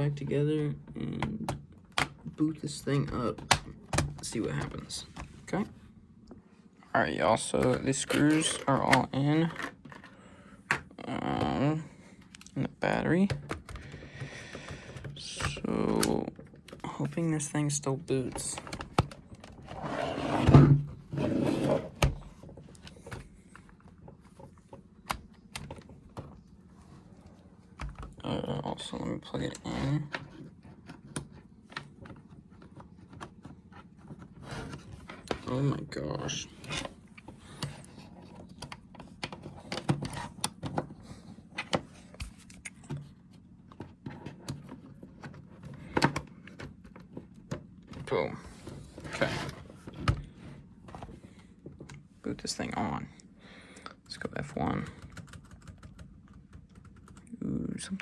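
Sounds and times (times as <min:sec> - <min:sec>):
laptop keys clicking: 0:54.8 - 0:57.3.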